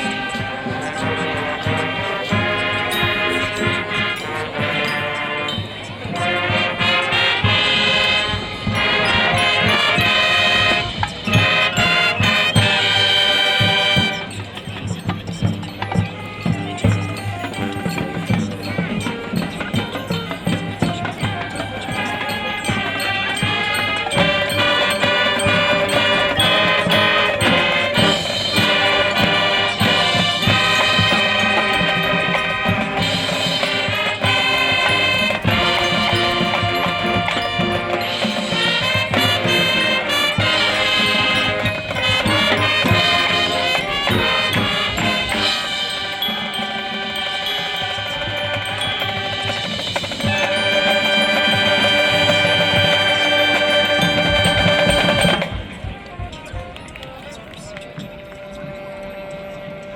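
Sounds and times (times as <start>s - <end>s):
brass melody: 0.0s - 56.4s
marching percussion: 0.0s - 59.9s.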